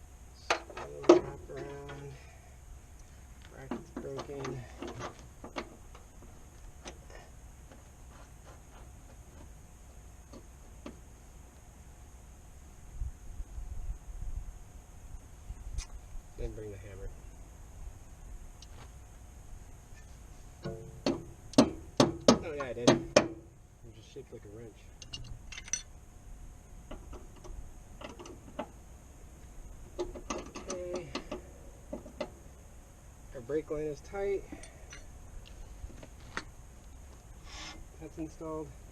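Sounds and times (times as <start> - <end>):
hand tools and metal parts clicking: 0.4 - 2.2, 24.9 - 25.9, 26.9 - 28.8, 30.0 - 32.4, 34.4 - 35.6.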